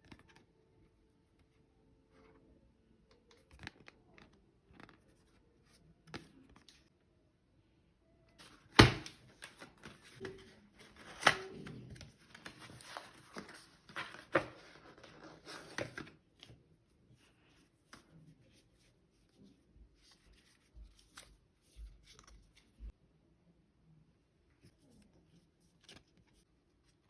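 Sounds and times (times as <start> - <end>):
paper rustling: 8.4 - 16.6.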